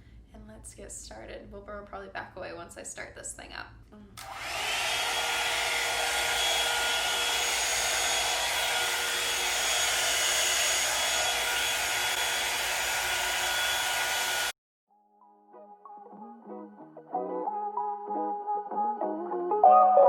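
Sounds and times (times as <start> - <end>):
blow dryer brush running: 4.2 - 14.6.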